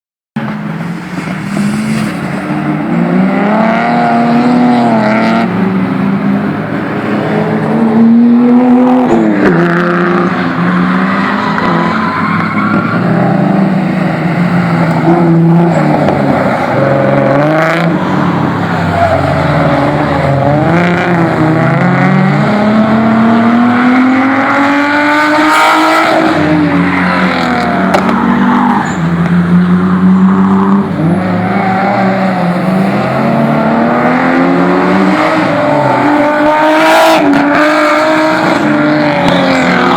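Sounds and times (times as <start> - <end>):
car engine revving: 0.7 - 39.9.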